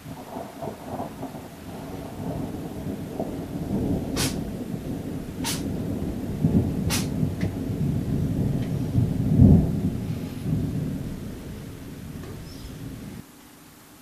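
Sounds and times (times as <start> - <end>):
thunder rumbling: 0.0 - 13.2
sharp clicks: 6.9 - 7.5.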